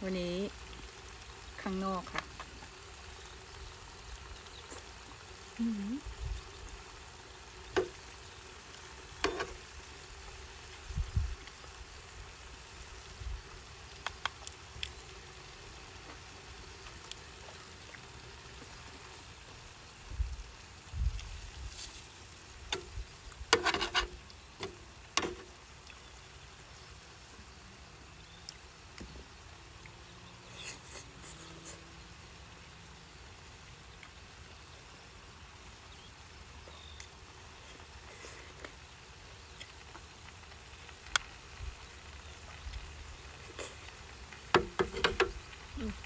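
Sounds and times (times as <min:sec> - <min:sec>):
wind rumble on microphone: 0:06.0 - 0:06.5, 0:10.8 - 0:11.5, 0:20.0 - 0:21.7.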